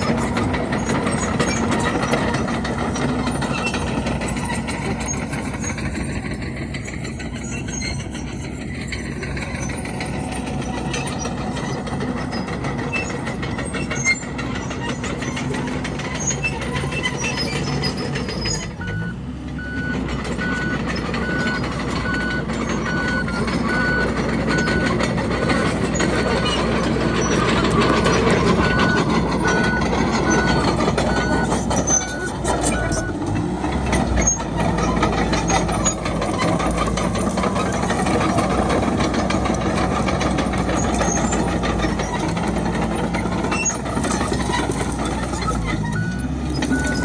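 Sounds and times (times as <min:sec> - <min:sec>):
bulldozer diesel engine running: 0:00.0 - 0:47.0
reverse alarm beeping: 0:27.0 - 0:33.2.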